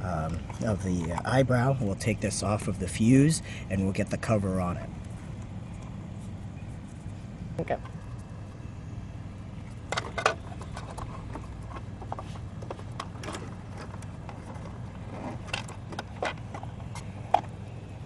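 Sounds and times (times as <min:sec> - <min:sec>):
steady low hum: 0:00.0 - 0:18.0
parts clicking and knocking: 0:09.7 - 0:17.6.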